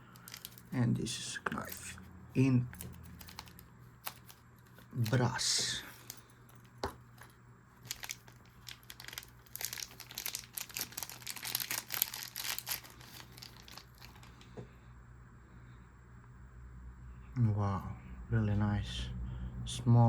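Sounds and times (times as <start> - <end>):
wrapping material crinkling: 0.0 - 14.5.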